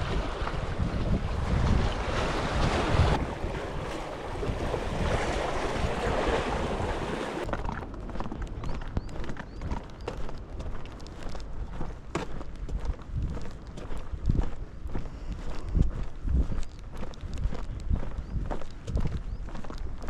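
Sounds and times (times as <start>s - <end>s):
waves washing on shore: 0.0s - 7.5s
wind buffeting microphone: 0.0s - 20.0s.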